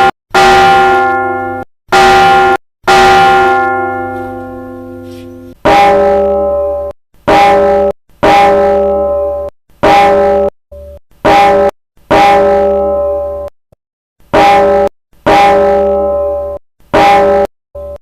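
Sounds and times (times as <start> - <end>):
church bell strokes: 0.0 - 10.5, 11.3 - 13.5, 14.4 - 17.4.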